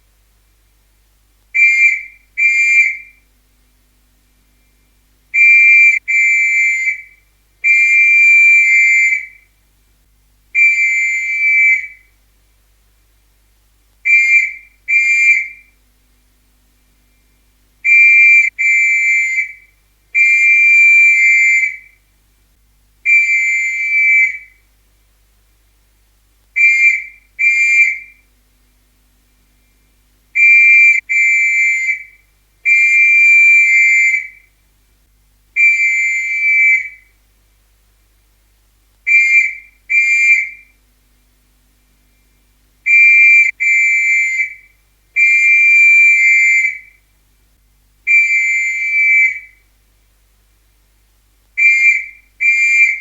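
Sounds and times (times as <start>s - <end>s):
police whistle blasts: 1.6s - 3.2s, 5.4s - 9.5s, 10.6s - 12.1s, 14.0s - 15.8s, 17.8s - 22.0s, 23.1s - 24.6s, 26.6s - 28.2s, 30.4s - 34.5s, 35.6s - 37.1s, 39.1s - 40.8s, 42.9s - 47.0s, 48.1s - 49.6s, 51.6s - 53.0s.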